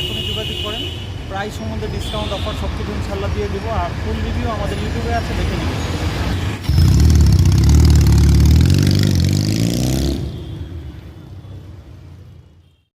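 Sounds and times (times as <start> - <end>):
motorcycle engine running loudly: 6.7 - 10.1.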